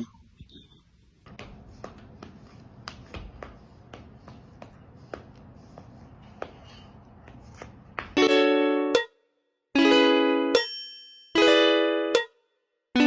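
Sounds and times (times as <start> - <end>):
low background hum: 0.0 - 8.9.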